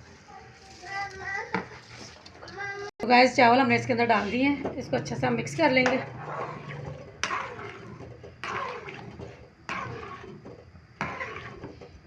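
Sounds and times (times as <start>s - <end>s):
spoon stirring rice in water: 5.7s - 12.0s.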